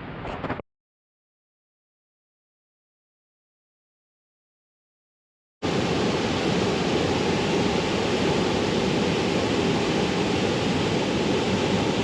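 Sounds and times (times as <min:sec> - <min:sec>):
waterfall rushing: 0:05.6 - 0:12.0.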